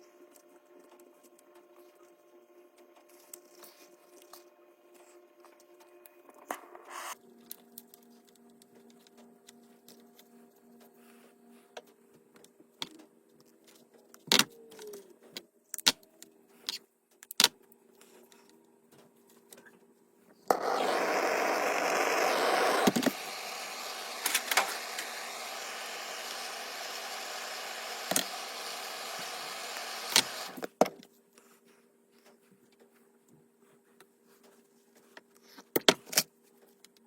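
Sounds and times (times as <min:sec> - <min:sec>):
loud steady hiss: 0:22.0 - 0:30.6.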